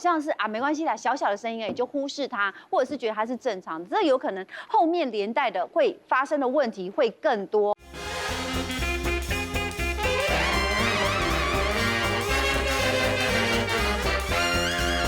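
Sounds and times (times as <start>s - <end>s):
swing music with brass: 7.8s - 15.0s.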